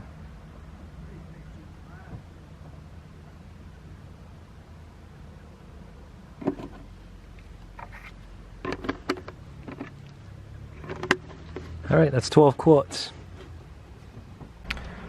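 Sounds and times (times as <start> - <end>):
low steady hum: 0.0 - 11.9, 12.8 - 15.0.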